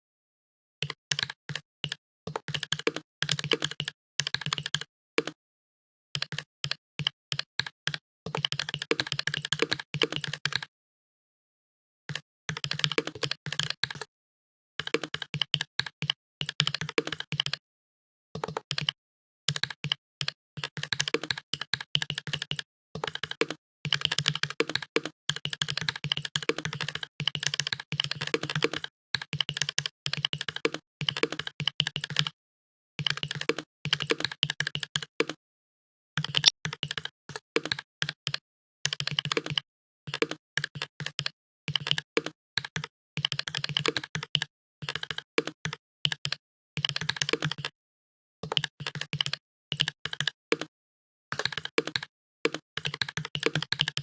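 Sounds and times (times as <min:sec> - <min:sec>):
fast typing on computer keyboard: 0:00.8 - 0:05.4, 0:06.2 - 0:10.7, 0:14.8 - 0:17.5, 0:18.4 - 0:19.0, 0:20.8 - 0:31.5, 0:44.9 - 0:47.7, 0:50.0 - 0:50.7, 0:51.4 - 0:54.0.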